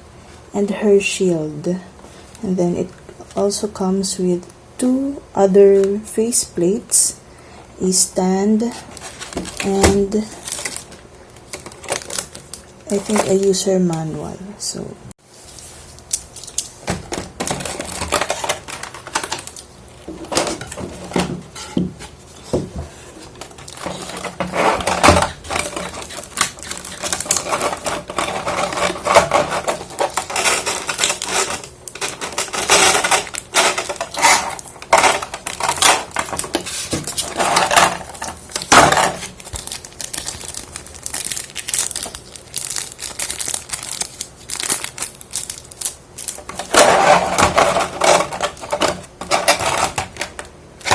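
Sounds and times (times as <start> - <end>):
plastic packaging crinkling: 8.7 - 13.6, 15.9 - 21.1, 23.0 - 50.9.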